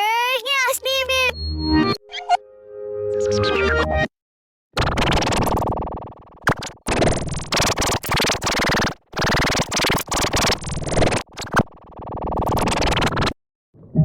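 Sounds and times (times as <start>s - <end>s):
harsh distorted noise: 4.8s - 13.4s.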